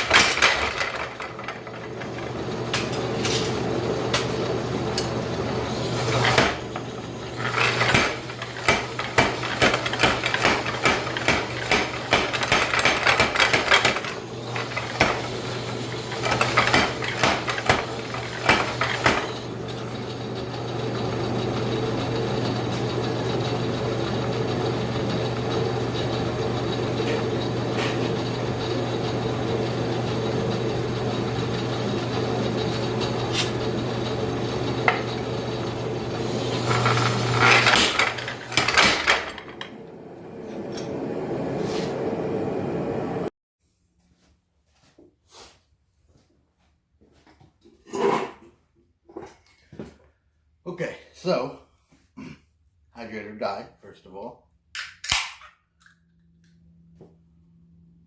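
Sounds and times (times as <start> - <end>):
steady machine hum: 0.0 - 43.3
power hammer metallic blows: 7.5 - 14.2, 16.1 - 19.4.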